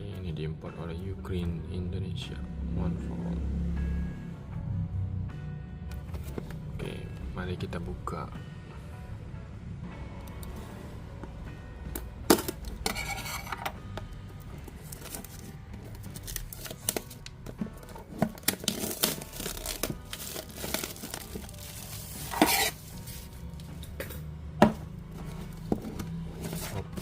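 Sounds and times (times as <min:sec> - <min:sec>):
quiet background music: 0:00.0 - 0:27.0
handling scrapes and clicks: 0:12.8 - 0:13.8, 0:20.6 - 0:23.2
cardboard packaging tearing: 0:14.8 - 0:17.2, 0:18.0 - 0:23.3.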